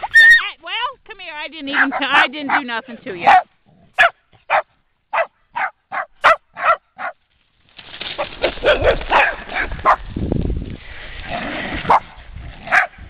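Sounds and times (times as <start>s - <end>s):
jumble of barks and yips: 1.7s - 7.2s, 8.6s - 10.0s, 11.8s - 12.1s, 12.7s - 13.0s
dog barking sharply: 3.2s - 7.2s, 8.6s - 10.0s, 12.7s - 12.9s.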